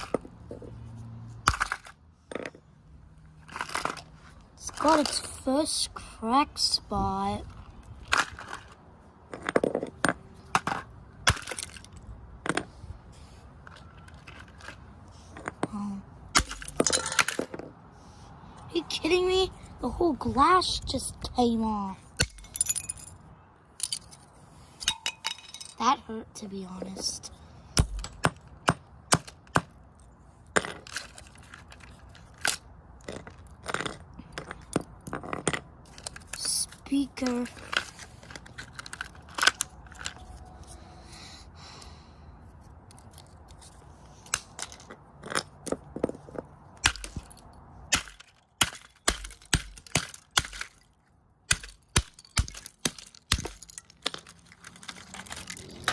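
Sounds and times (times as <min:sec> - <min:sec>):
glass cracking and breaking: 0:47.9 - 0:55.9.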